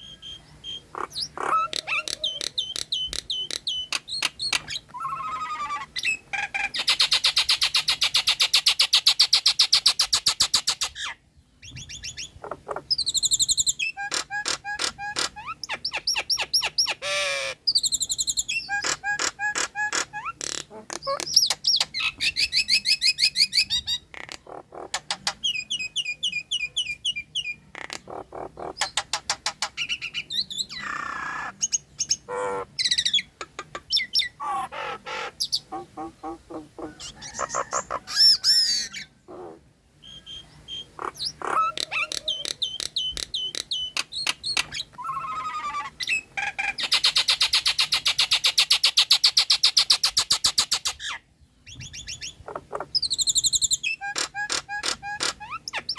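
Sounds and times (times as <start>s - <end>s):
myna whistles and chattering: 0.0s - 6.2s.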